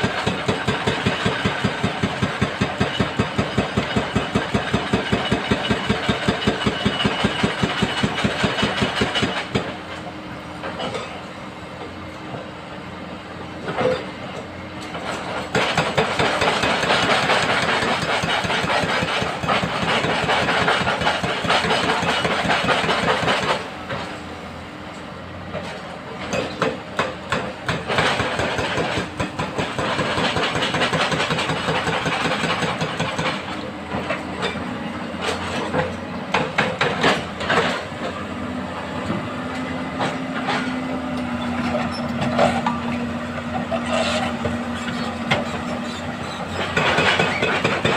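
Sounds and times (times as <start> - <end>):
diesel engine hum: 33.4 - 47.9
knocks and clatters: 41.6 - 47.9.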